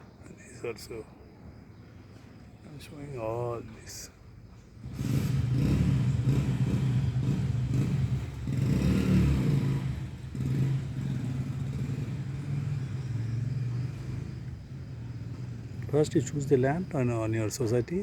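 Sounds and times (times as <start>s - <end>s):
vehicle engine humming: 4.8s - 18.0s.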